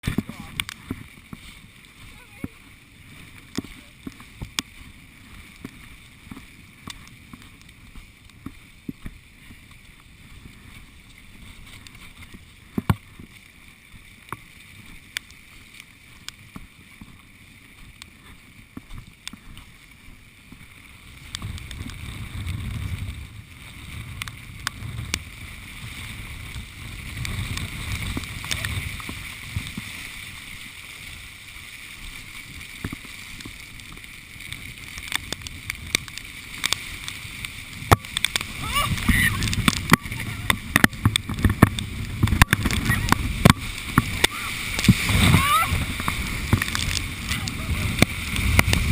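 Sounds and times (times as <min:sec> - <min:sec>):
strong wind buffeting microphone: 0:21.0 - 0:30.1, 0:37.0 - 0:48.9.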